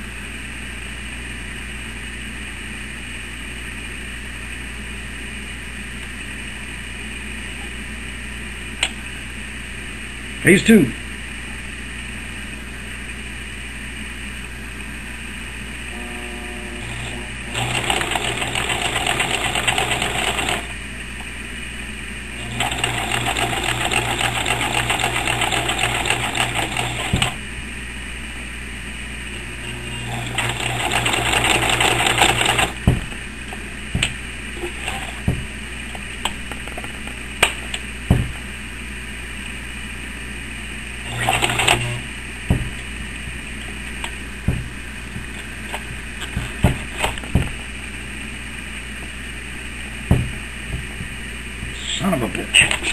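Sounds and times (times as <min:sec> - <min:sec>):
sewing machine stitching: 0:16.8 - 0:20.7, 0:22.4 - 0:27.4, 0:29.9 - 0:32.8, 0:34.6 - 0:35.3, 0:41.1 - 0:42.0.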